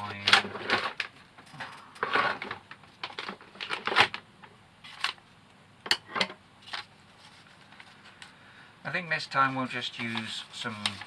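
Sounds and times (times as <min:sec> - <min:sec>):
small objects rustling and knocking: 0:00.0 - 0:04.2.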